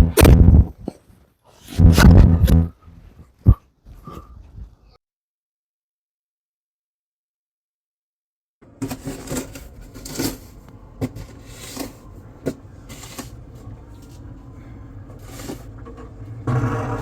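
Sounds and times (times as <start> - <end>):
vehicle rumble: 10.6 - 17.0.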